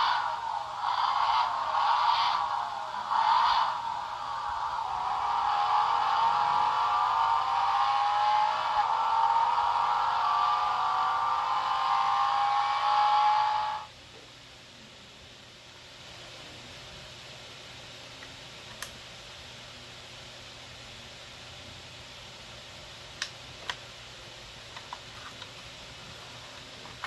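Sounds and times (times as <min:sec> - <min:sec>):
car engine accelerating: 0:00.0 - 0:13.9.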